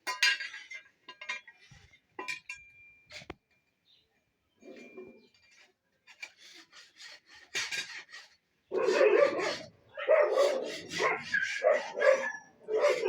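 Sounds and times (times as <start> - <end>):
dog barking loudly: 8.7 - 13.0.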